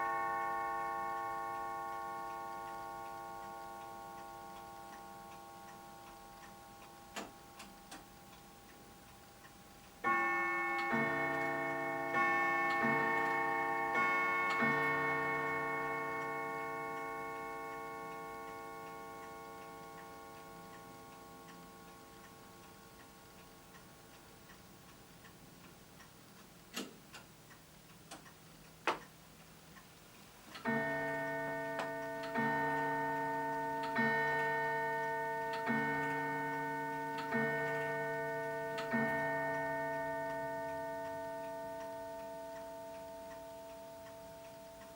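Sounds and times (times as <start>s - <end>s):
clock striking gongs: 0.0s - 8.8s, 10.0s - 23.9s, 30.6s - 44.9s
sharp clicks: 26.0s - 27.3s.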